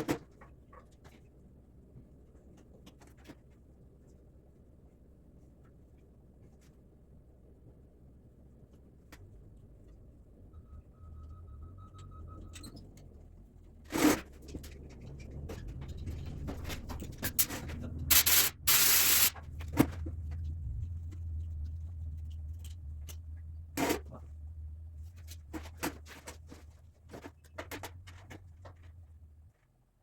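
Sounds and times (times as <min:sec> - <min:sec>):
tools clicking and scraping: 0:13.9 - 0:20.5
low steady hum: 0:14.5 - 0:30.0
loud bursts of noise: 0:18.1 - 0:19.5.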